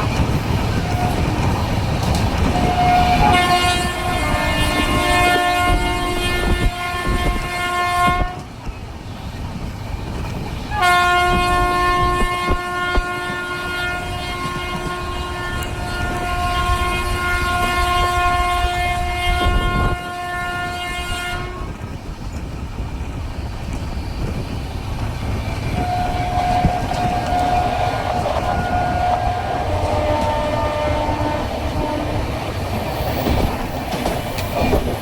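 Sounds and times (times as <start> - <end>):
train rumble and clickety-clack: 0.0 - 35.0
locomotive air horn blast: 2.4 - 8.5, 10.7 - 21.8, 25.7 - 32.5.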